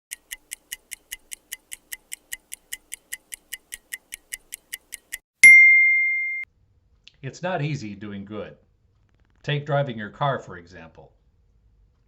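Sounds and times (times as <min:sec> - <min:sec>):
timer ticking rapidly: 0:00.1 - 0:05.2
bell ding: 0:05.4 - 0:06.4.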